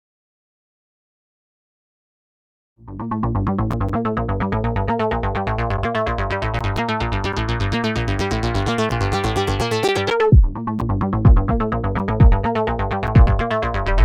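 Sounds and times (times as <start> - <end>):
electronic dance music: 6.2 - 10.4, 13.1 - 14.0
deep falling bass hits: 11.2 - 12.5, 13.1 - 14.0.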